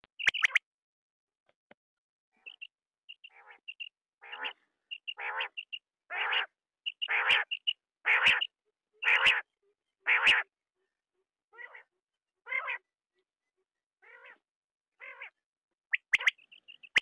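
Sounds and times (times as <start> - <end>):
quail calling: 2.4 - 10.5, 11.5 - 12.8, 14.0 - 14.4, 15.0 - 17.0.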